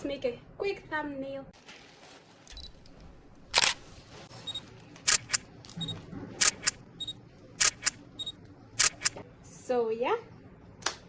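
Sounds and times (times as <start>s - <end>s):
camera shutter clicks: 3.5s - 3.8s, 5.1s - 5.5s, 6.4s - 6.8s, 7.6s - 8.0s, 8.8s - 9.2s.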